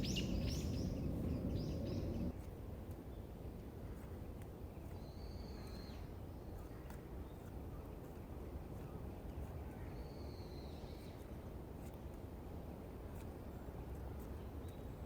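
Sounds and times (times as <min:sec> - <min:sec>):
bird whistling call: 0:00.0 - 0:02.2
low outdoor rumble: 0:00.0 - 0:02.4.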